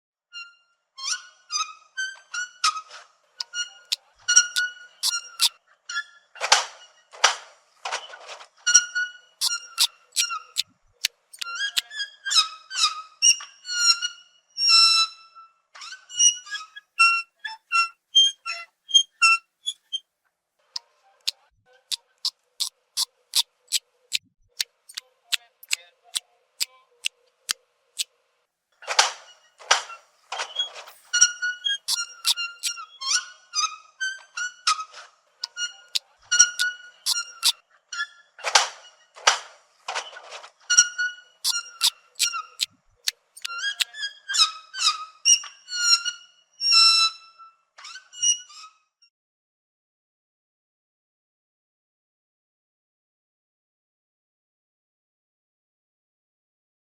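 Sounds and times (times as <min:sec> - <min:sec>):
sharp clicks: 0:09.4 - 0:10.3, 0:37.1 - 0:37.5.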